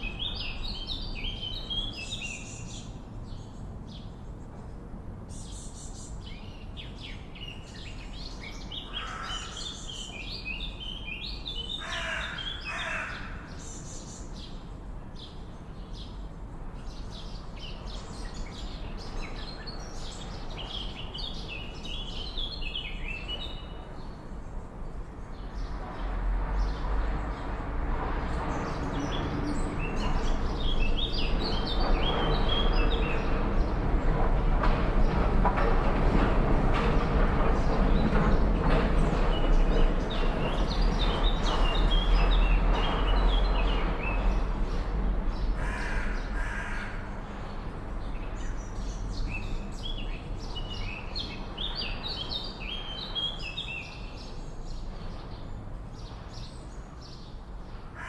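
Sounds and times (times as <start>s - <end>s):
harsh bird calls: 8.8s - 14.1s, 39.2s - 54.0s.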